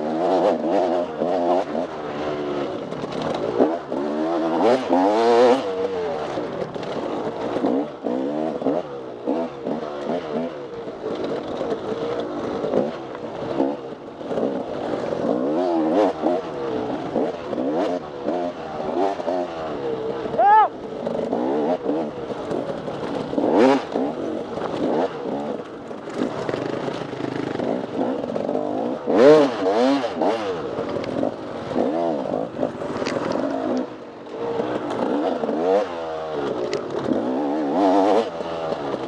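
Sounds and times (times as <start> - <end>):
motorcycle engine revving: 0.0 - 39.0.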